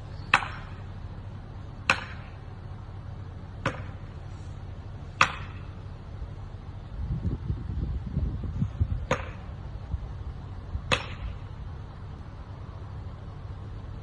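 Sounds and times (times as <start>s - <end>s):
low steady hum: 0.0s - 14.0s
tool striking wood: 0.3s - 0.8s, 1.8s - 2.4s, 3.6s - 4.1s, 5.2s - 5.7s, 9.0s - 9.5s, 10.9s - 11.4s.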